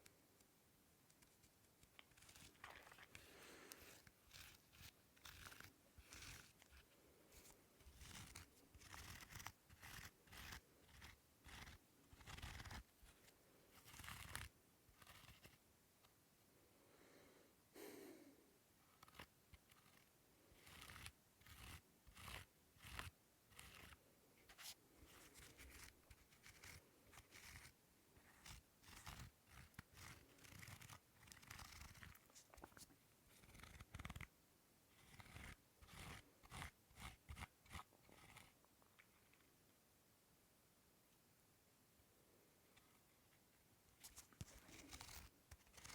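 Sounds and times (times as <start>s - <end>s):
crisp scratching: 1.2s - 15.6s, 19.0s - 34.3s, 44.0s - 45.9s.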